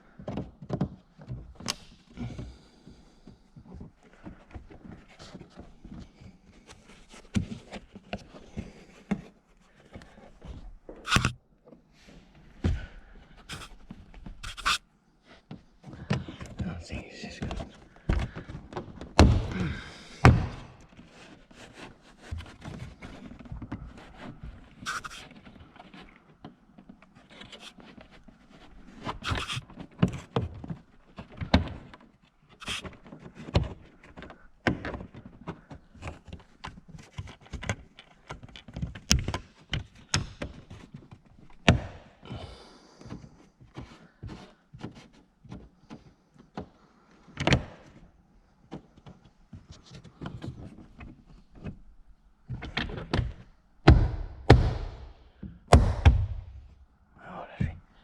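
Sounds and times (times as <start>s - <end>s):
loud thunks: 19.2s - 20.7s, 53.8s - 56.8s
car interior parts knocking and clicking: 52.5s - 56.7s.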